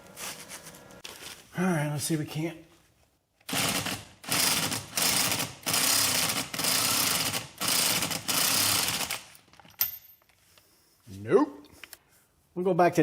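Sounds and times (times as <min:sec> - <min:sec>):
pneumatic impact wrench hammering: 0:03.5 - 0:09.4.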